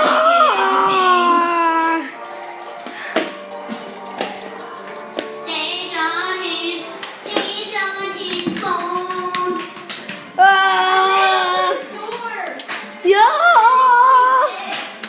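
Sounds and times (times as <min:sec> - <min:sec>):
person singing over music: 0:00.0 - 0:12.0.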